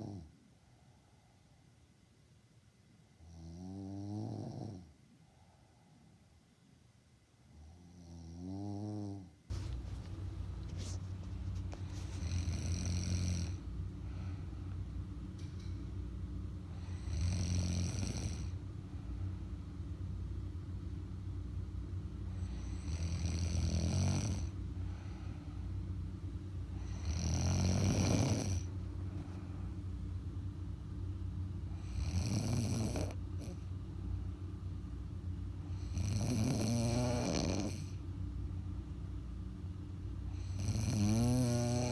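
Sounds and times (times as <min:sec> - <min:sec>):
woman snoring: 0:00.0 - 0:00.3, 0:03.2 - 0:04.9, 0:07.6 - 0:09.3, 0:12.2 - 0:13.6, 0:16.8 - 0:18.6, 0:22.4 - 0:24.6, 0:26.8 - 0:28.7, 0:31.7 - 0:33.6, 0:35.7 - 0:38.0, 0:40.3 - 0:41.9.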